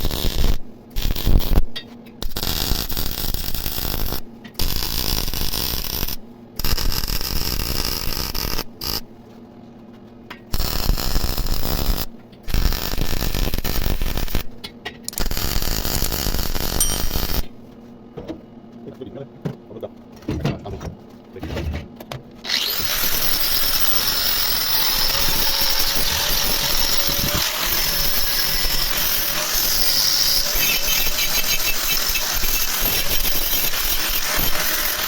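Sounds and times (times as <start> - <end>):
welding arc crackling and hissing: 0.0 - 1.6, 2.2 - 9.0, 10.6 - 14.5, 15.2 - 17.5, 22.6 - 35.0.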